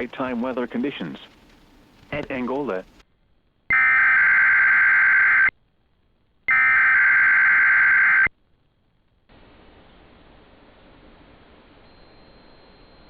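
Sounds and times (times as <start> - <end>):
faint radio hiss: 0.0 - 13.0
buzzy digital data warble: 6.5 - 8.3.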